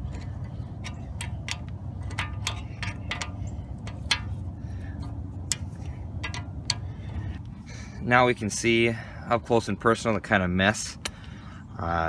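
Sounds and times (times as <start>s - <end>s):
low hum: 0.0s - 8.0s.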